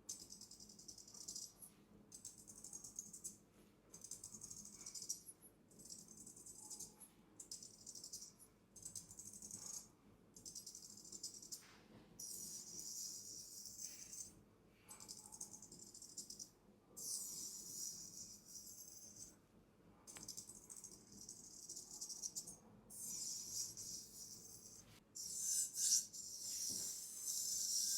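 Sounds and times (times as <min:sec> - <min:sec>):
straight razor scraping: 0:23.0 - 0:27.9.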